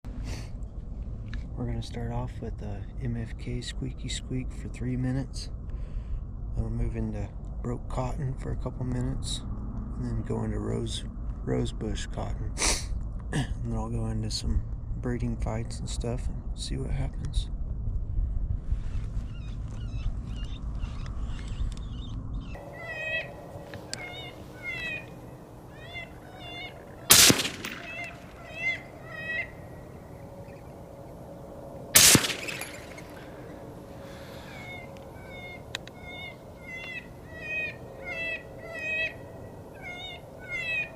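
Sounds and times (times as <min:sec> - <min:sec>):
low wind rumble: 0:00.0 - 0:40.9.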